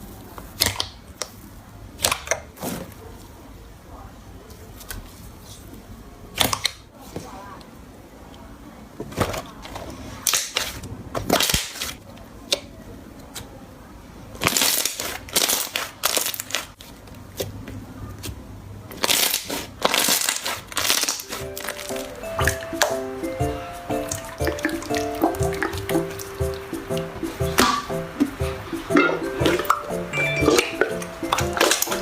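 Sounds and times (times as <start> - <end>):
slime crackling and crunching: 14.3 - 17.5, 18.9 - 22.6.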